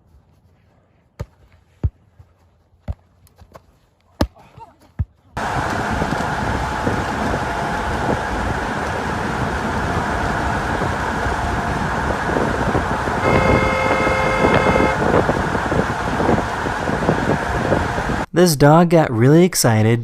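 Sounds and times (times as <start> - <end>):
traffic noise: 5.4 - 18.3
vehicle horn: 13.2 - 15.2.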